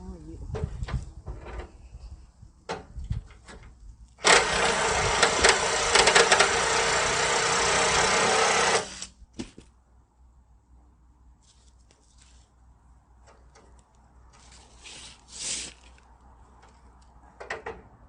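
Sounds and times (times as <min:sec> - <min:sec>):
pneumatic wrench running: 0:04.2 - 0:09.2.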